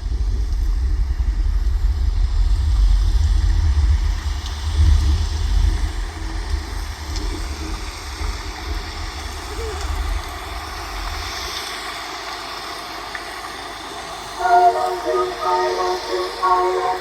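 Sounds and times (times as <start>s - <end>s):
music: 14.4s - 17.0s.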